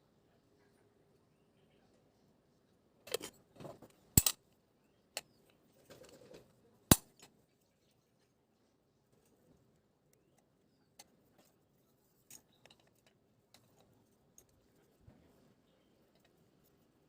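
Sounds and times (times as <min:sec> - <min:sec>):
handling and scraping: 0:03.0 - 0:04.4, 0:05.2 - 0:17.0.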